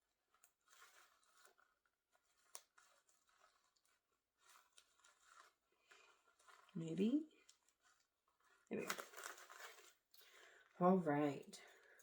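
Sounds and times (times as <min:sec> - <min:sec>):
fabric rustling: 0:00.1 - 0:11.0.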